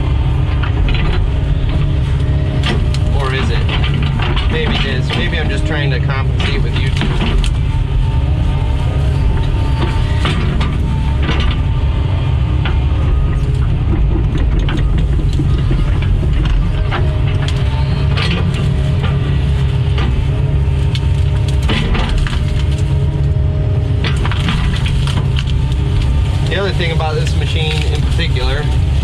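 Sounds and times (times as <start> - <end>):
excavator diesel engine: 0.0 - 29.0
wood cracking and snapping: 0.0 - 29.0.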